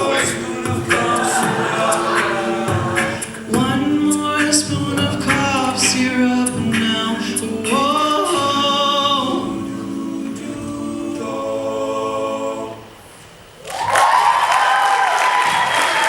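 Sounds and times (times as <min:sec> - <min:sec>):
a cappella group singing chord: 0:00.0 - 0:13.1
audience applause: 0:13.6 - 0:16.0
audience cheer: 0:13.6 - 0:16.0.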